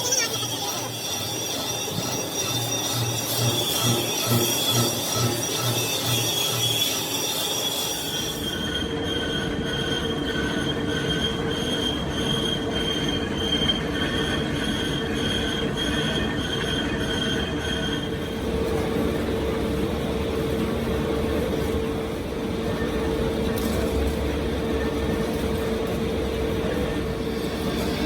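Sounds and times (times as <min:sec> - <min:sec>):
machinery drone with low hum: 0:00.0 - 0:07.2, 0:08.4 - 0:28.0
metal-on-metal squeal: 0:00.0 - 0:18.3.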